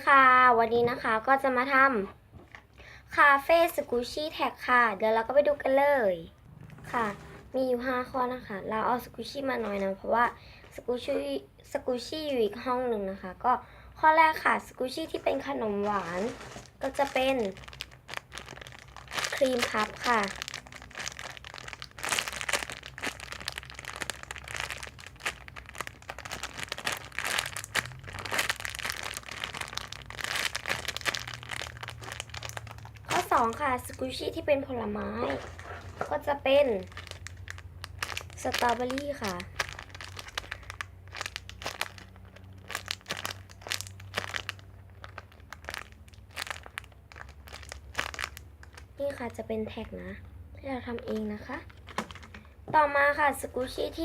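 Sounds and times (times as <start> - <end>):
plastic packaging crinkling: 14.8 - 34.4, 35.2 - 49.4, 51.0 - 52.6.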